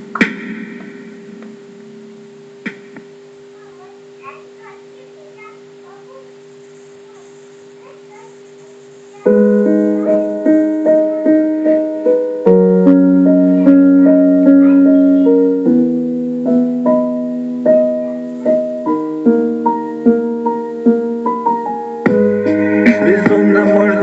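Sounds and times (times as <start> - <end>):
piano music: 9.2 - 24.0.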